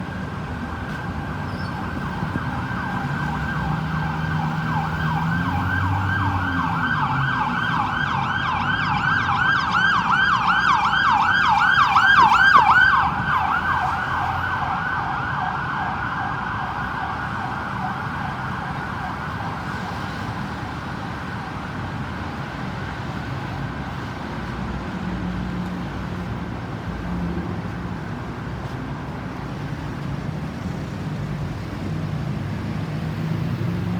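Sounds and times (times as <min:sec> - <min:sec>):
ambulance siren yelping: 0:00.0 - 0:22.4
road traffic rumble: 0:00.0 - 0:33.9.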